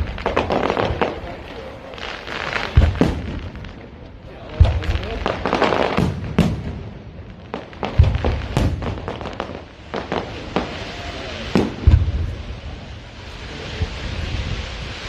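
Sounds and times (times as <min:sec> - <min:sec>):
deep firework boom: 0:00.0 - 0:01.6, 0:02.7 - 0:15.0
fireworks bangs and crackles: 0:00.0 - 0:15.0.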